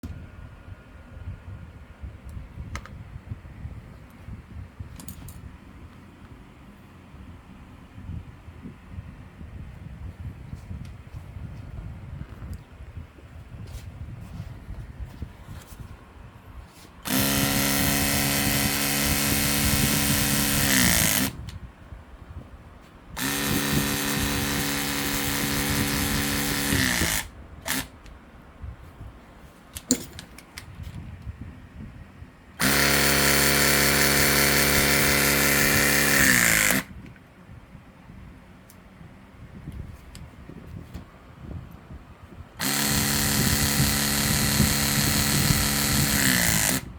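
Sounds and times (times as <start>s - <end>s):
crimping tool motor humming: 17.0s - 21.5s, 23.2s - 28.0s, 32.6s - 36.9s, 42.6s - 46.9s.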